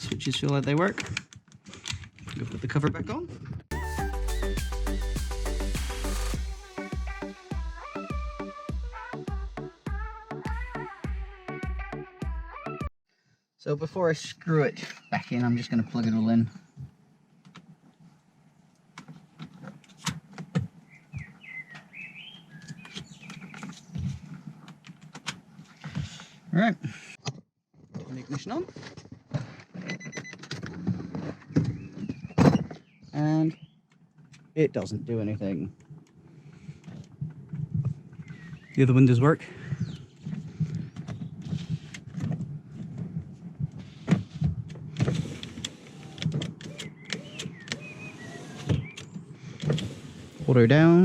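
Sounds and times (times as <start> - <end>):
bird chirping: 20.8 - 24.1, 31.6 - 33.9, 38.1 - 41.4, 46.0 - 50.5
power window motor humming: 45.0 - 49.0, 49.6 - 50.5.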